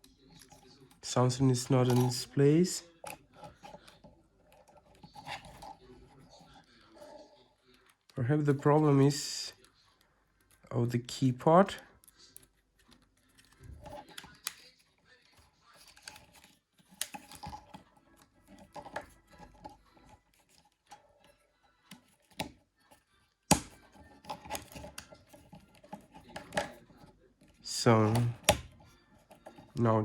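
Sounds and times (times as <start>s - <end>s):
plastic parts clicking: 15.8s - 22.6s, 23.5s - 29.8s
plastic snap: 23.5s - 25.2s.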